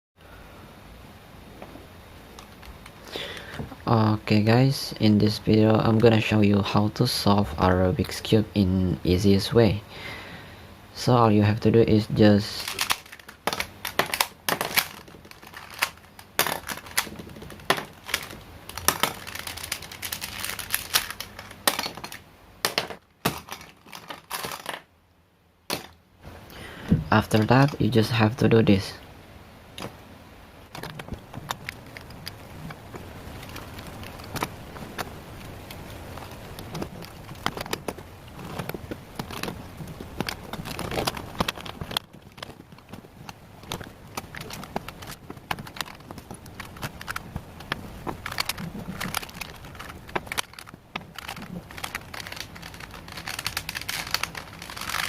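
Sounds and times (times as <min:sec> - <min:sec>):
puzzle cube plastic clicks: 0:12.4 - 0:24.9, 0:30.8 - 0:55.0
rubik's cube clicking: 0:43.7 - 0:55.0.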